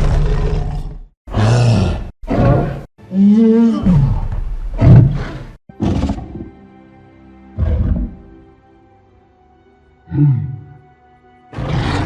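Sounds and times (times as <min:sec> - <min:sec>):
monster roars and growls: 0:00.0 - 0:06.2, 0:11.6 - 0:12.0.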